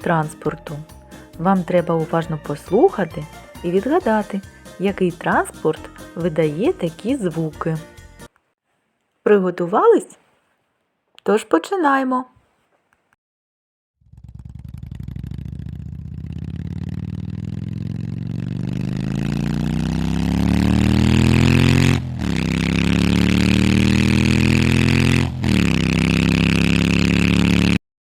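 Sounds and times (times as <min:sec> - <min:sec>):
motorcycle engine revving: 0:14.0 - 0:27.8.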